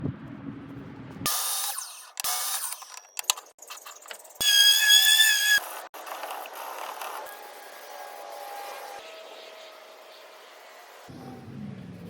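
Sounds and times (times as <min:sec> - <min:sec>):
high-pitched power tool whine: 0:01.3 - 0:03.3, 0:04.4 - 0:11.3
tool clicking and rattling: 0:01.7 - 0:04.5.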